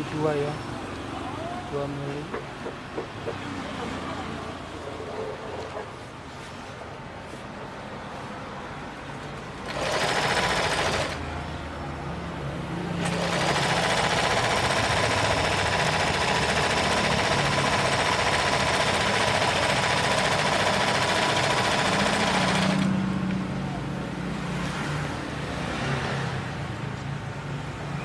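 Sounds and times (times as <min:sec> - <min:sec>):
sewing machine running: 0:09.6 - 0:11.2, 0:13.0 - 0:23.0.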